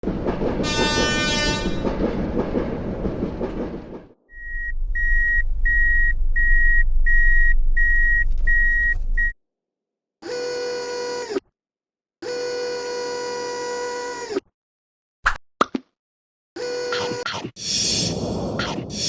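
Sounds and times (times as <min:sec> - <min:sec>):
train rumbling past: 0:00.0 - 0:07.8
train horn blast: 0:00.6 - 0:01.9
low hum: 0:04.3 - 0:09.3.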